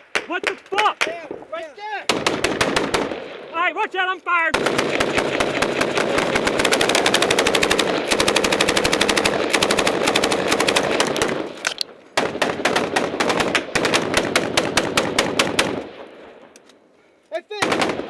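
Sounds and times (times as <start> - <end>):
automatic gunfire bursts: 2.1 - 3.4, 4.5 - 11.6, 12.2 - 16.0, 17.6 - 18.0.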